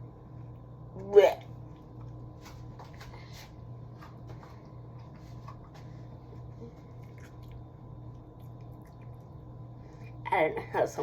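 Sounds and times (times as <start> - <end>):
low hum: 0.0 - 11.0
person chewing tomato: 6.7 - 9.4.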